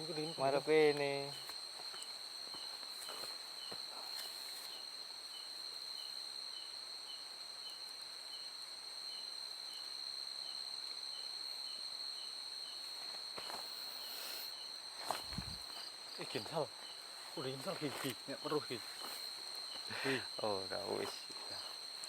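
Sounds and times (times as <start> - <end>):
crickets trilling: 0.0 - 22.0
insect chirping softly: 0.0 - 22.0.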